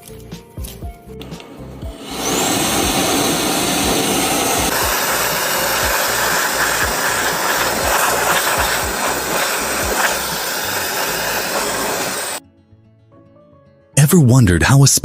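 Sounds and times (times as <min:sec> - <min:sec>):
rising whine: 0:01.4 - 0:12.4
loud rushing noise: 0:01.9 - 0:12.4.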